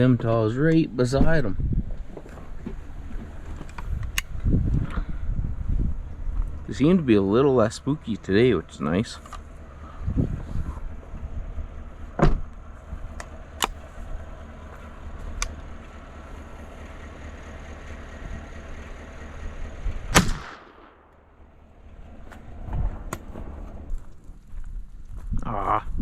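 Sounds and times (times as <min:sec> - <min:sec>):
vehicle engine idling: 0:00.0 - 0:25.7
sharp clicks: 0:03.6 - 0:04.4, 0:13.1 - 0:13.9, 0:20.2 - 0:21.5
shotgun shot: 0:20.1 - 0:21.6.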